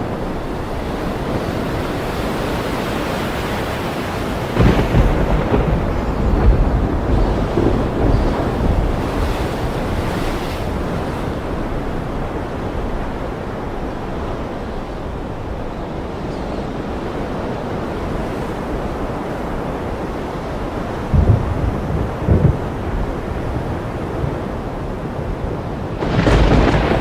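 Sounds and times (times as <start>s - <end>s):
ocean surf: 0.0s - 27.0s
thunder rumble: 3.7s - 12.4s, 21.1s - 27.0s.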